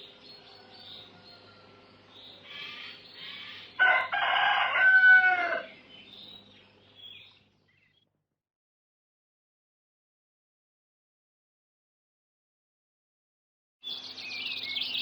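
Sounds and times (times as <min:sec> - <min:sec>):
small birds chirping: 0:00.0 - 0:03.8, 0:05.6 - 0:08.2, 0:13.8 - 0:15.0
rooster crowing: 0:00.3 - 0:01.9, 0:02.5 - 0:05.8.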